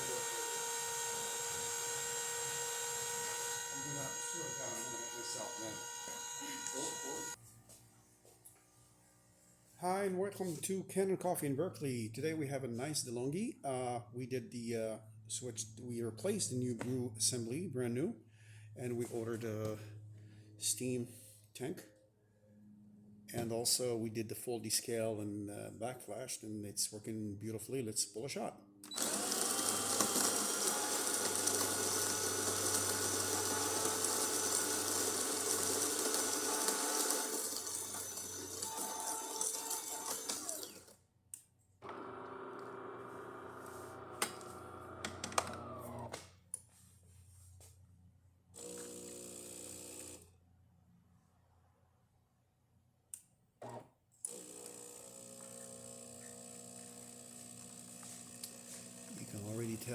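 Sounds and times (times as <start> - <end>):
espresso machine whirring: 0.0 - 7.4, 28.9 - 40.9, 41.8 - 46.2, 48.6 - 50.3, 53.6 - 59.9.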